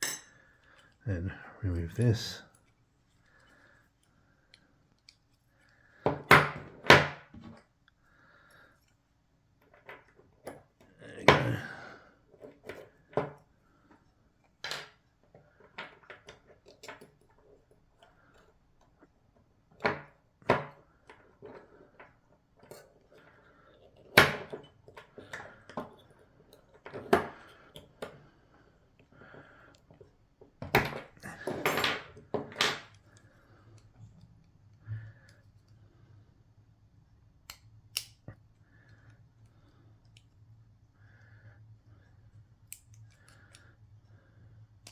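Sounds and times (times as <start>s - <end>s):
small metal lock parts clicking: 14.5s - 18.9s, 21.1s - 28.2s, 37.4s - 40.4s, 42.6s - 43.9s.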